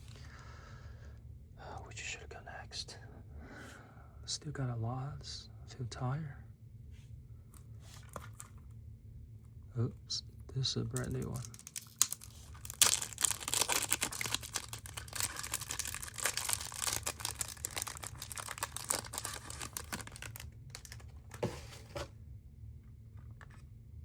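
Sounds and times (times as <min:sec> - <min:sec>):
packaging crinkling and tearing: 0:11.0 - 0:22.1.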